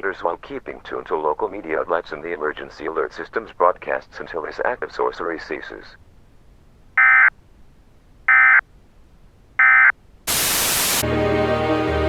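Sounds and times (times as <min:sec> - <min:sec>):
electronic data tone bursts: 0:09.6 - 0:11.0
loud burst of static: 0:10.3 - 0:11.0
music: 0:11.0 - 0:12.0.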